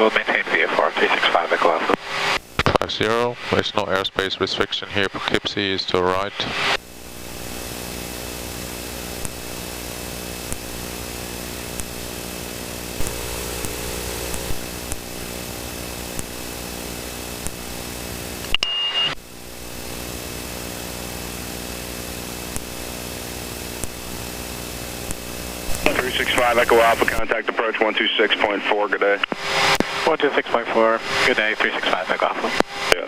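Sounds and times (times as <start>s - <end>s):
jet cockpit drone: 6.4s - 27.6s
short high beep: 18.6s - 19.2s.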